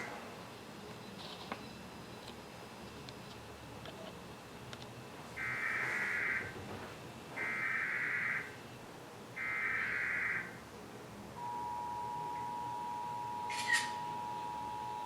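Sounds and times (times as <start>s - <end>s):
two-tone attention signal: 11.4s - 15.0s
sharp chirp: 13.4s - 14.2s.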